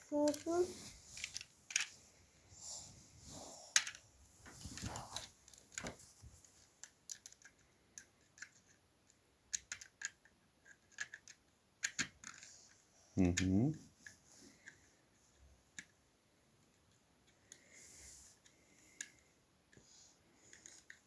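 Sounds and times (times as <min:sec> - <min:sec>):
soft handling noise: 0:00.0 - 0:08.7
screwdriver and plastic parts clicking: 0:06.8 - 0:12.5.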